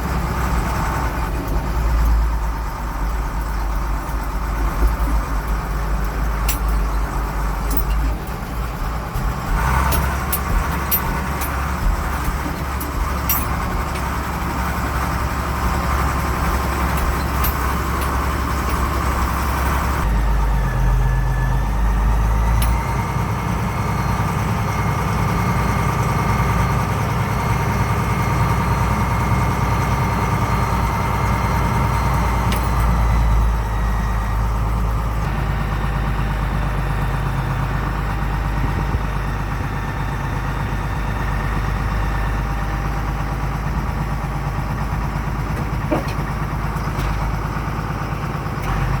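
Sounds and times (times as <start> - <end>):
tractor engine running: 0.0 - 49.0
light rattles and clicks: 1.3 - 20.1.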